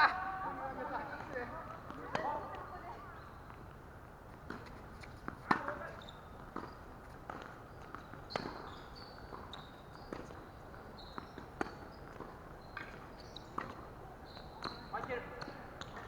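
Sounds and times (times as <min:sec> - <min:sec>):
shoe squeaks: 0:05.9 - 0:06.3, 0:08.3 - 0:10.0, 0:14.2 - 0:14.9.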